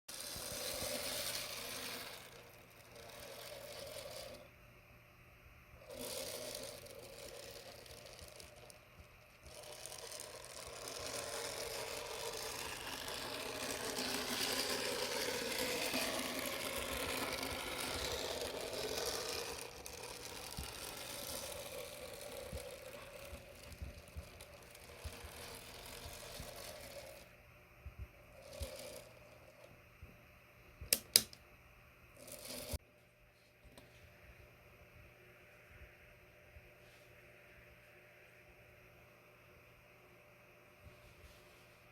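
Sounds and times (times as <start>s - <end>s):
model locomotive rattling whir: 0.1s - 4.5s, 5.8s - 27.3s, 28.3s - 29.7s, 32.2s - 32.8s.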